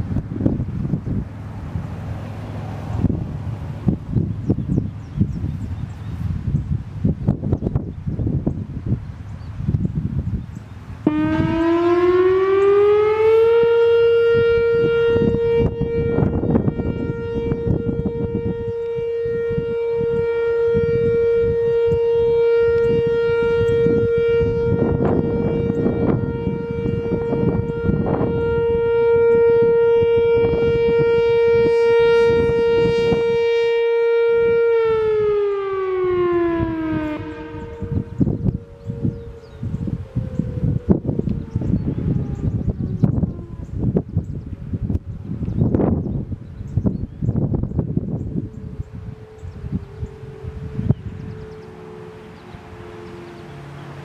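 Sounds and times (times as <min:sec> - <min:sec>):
electronic warning siren: 0:09.7 - 0:54.0.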